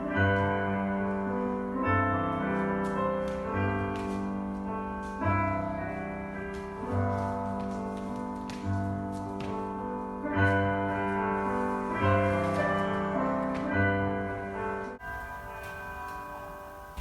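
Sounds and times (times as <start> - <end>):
piano chords over low bass note: 14.9 - 17.0.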